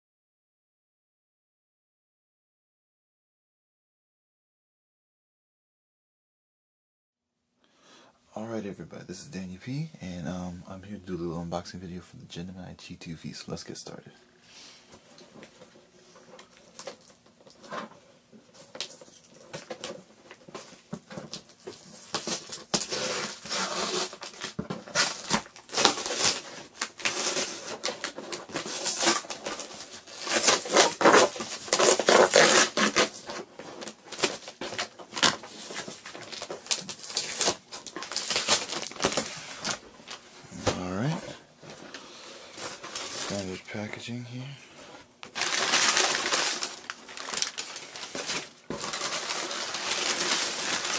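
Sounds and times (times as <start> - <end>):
packaging rustling and crinkling: 14.8 - 50.9.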